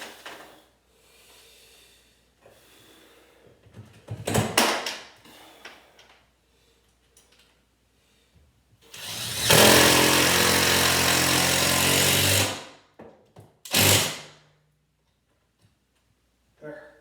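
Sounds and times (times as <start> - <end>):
power drill running: 8.9 - 12.6, 13.7 - 14.2.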